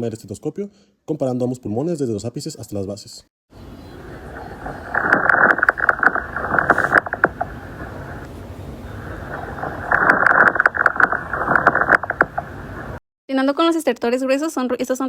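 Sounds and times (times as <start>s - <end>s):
lung crackles: 3.9s - 13.0s
breathing hiss: 5.6s - 9.9s.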